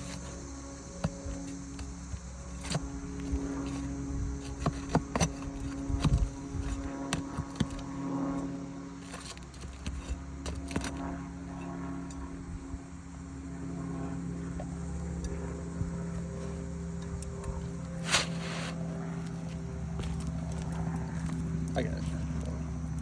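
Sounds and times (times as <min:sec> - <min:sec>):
low machine hum: 0:00.0 - 0:23.0
hand tools clicking and knocking: 0:01.0 - 0:07.9.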